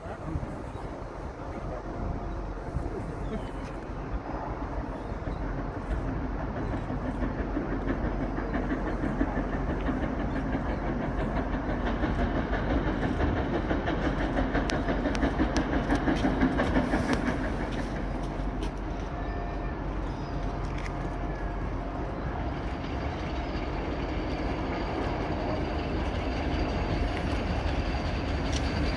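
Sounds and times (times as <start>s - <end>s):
steam train arriving: 0.0s - 28.9s
wheels clattering over rail joints: 5.3s - 19.2s, 20.1s - 28.9s.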